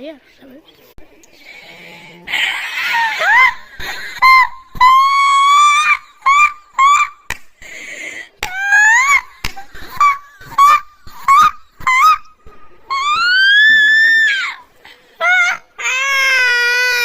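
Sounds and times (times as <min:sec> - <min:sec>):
breaths: 0:01.3 - 0:02.7, 0:07.6 - 0:08.4, 0:14.7 - 0:15.2
woman fake laughing: 0:02.6 - 0:07.2, 0:08.5 - 0:12.3.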